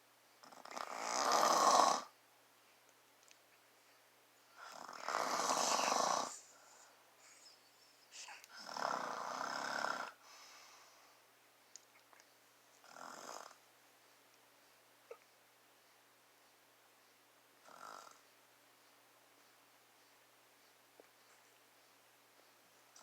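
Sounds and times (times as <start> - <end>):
man snoring: 0.4 - 2.1, 4.6 - 6.4, 8.6 - 10.2.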